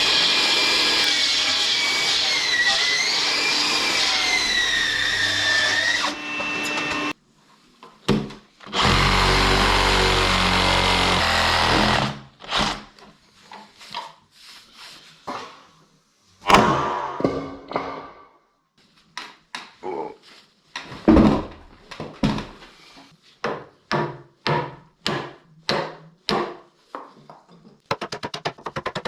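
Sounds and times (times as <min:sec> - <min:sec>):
power tool whining: 0:00.0 - 0:07.2, 0:08.7 - 0:12.8.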